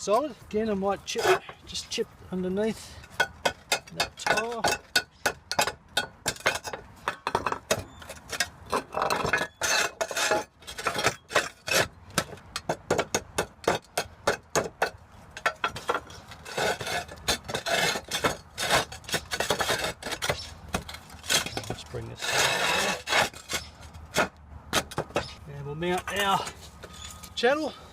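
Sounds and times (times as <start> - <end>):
hammer claw scraping tile: 7.9 - 12.3, 15.7 - 24.3.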